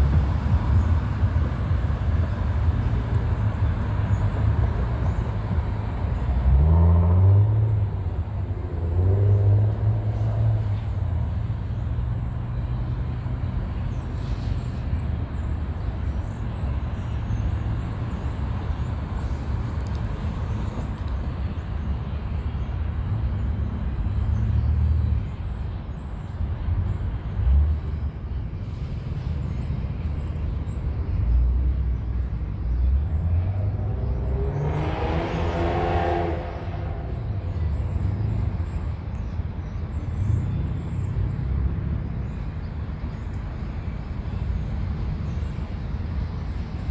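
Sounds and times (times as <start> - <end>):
steady wind rush: 0.0 - 6.4.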